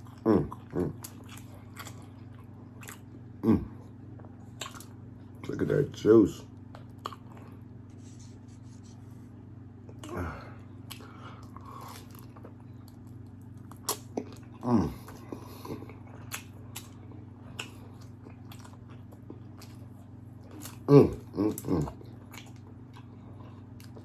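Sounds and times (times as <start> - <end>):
chewing with wet mouth clicks: 0.0 - 3.1, 4.1 - 5.0, 6.6 - 7.6, 10.8 - 15.3, 15.9 - 20.9, 21.5 - 24.0
steady low hum: 0.0 - 24.0.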